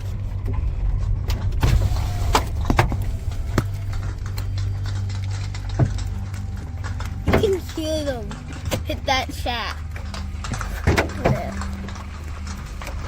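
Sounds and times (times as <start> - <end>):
low rumble: 0.0 - 13.0
sharp knocks and clicks: 2.4 - 9.0.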